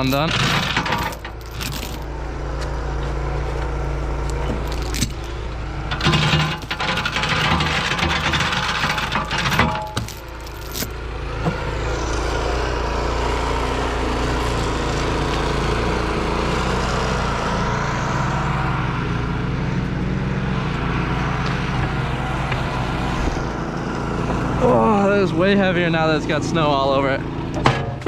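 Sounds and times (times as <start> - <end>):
vehicle engine running: 0.0 - 28.0
sharp knocks: 27.6 - 28.0.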